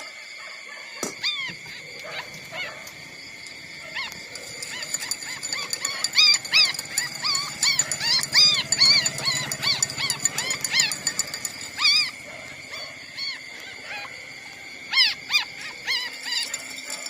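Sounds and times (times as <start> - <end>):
puppy whining: 3.8 - 14.2, 14.9 - 17.0.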